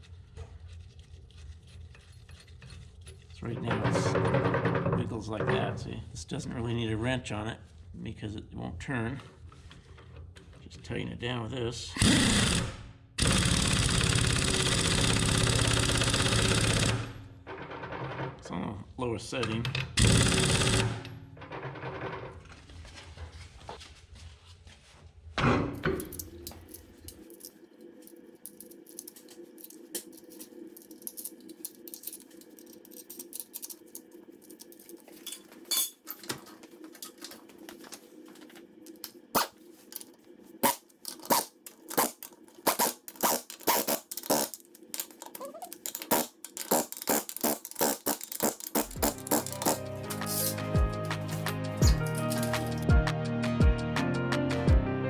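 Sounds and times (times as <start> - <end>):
metal tools clinking and rattling: 25.8 - 52.9.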